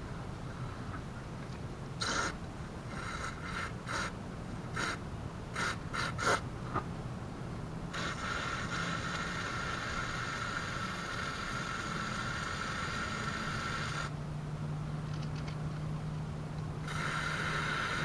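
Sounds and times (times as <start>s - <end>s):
aerosol spray can hissing: 8.0s - 14.1s, 16.9s - 18.0s.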